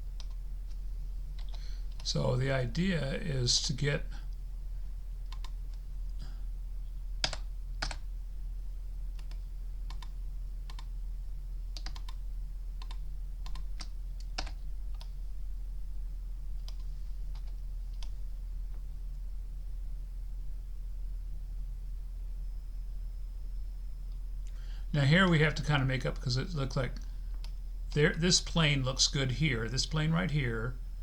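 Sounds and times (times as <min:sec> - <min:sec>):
low electrical hum: 0:00.0 - 0:31.0
computer keyboard and mouse clicks: 0:00.2 - 0:00.8, 0:01.4 - 0:02.1, 0:05.3 - 0:05.8, 0:07.2 - 0:08.0, 0:09.1 - 0:10.9, 0:11.8 - 0:12.2, 0:12.8 - 0:15.2, 0:16.6 - 0:18.2.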